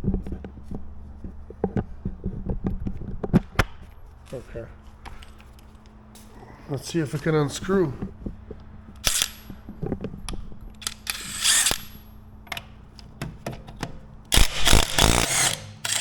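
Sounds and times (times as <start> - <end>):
impact wrench hammering: 9.0 - 9.6, 10.8 - 12.1, 14.3 - 16.0.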